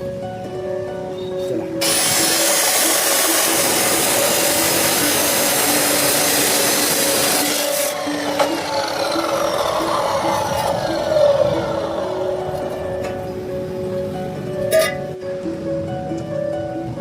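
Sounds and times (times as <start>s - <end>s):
background music: 0.0s - 17.0s
harsh metalwork hiss: 1.8s - 10.1s.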